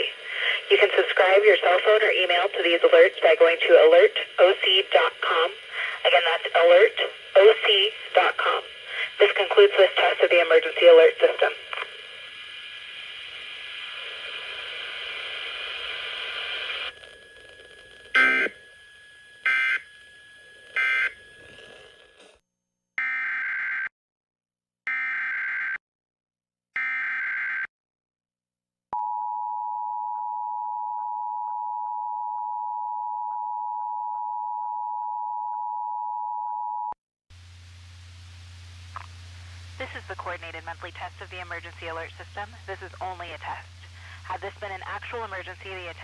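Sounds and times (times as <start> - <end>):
radio hiss: 0.0 - 18.7, 37.4 - 46.0
warbling digital data tones: 16.9 - 22.0
two-tone attention signal: 18.2 - 18.6.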